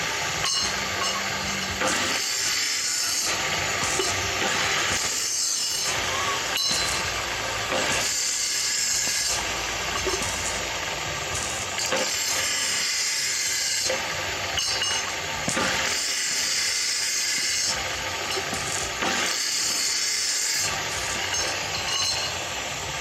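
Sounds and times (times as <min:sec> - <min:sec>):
welding arc hissing: 0:00.0 - 0:23.0.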